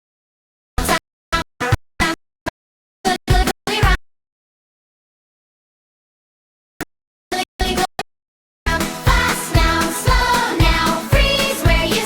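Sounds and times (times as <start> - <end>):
upbeat children's song: 7.3 - 8.0, 8.7 - 12.0
steady drum beat: 8.7 - 12.0.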